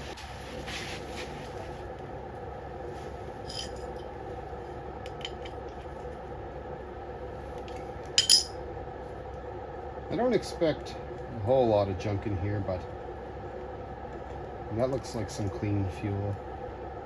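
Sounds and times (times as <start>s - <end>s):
steady background hum: 0.0s - 17.0s
metal parts clattering: 3.5s - 4.0s, 8.2s - 8.5s.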